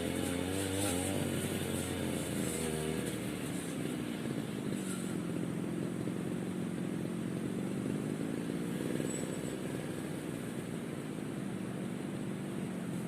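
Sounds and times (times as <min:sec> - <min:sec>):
brush cutter engine running: 0:00.0 - 0:07.9.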